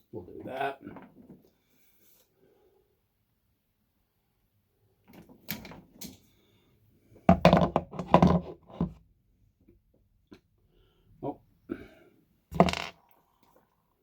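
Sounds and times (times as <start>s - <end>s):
knocks and plastic rattles: 7.3s - 9.0s, 12.5s - 12.9s.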